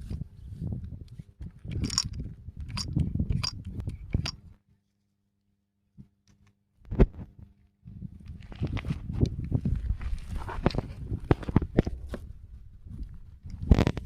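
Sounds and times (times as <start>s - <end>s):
hydraulic crimping tool clicking: 1.8s - 4.4s.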